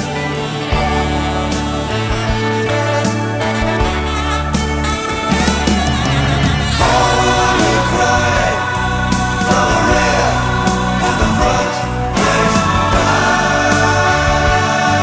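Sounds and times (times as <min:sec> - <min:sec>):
choral backing vocals: 0:00.0 - 0:15.0
keyboards and bass: 0:00.0 - 0:15.0.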